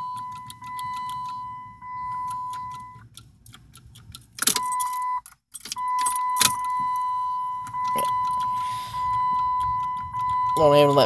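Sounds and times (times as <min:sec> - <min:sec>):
high electronic warning chime: 0:00.0 - 0:03.0, 0:04.6 - 0:11.0
keys jingling: 0:00.0 - 0:11.0
key ring rattling: 0:02.1 - 0:07.0.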